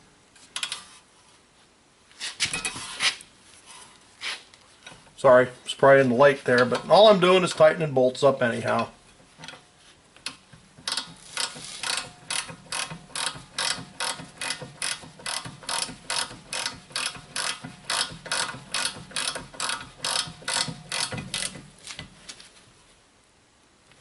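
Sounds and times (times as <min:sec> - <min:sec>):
ratchet wrench clicking: 0:10.2 - 0:21.6.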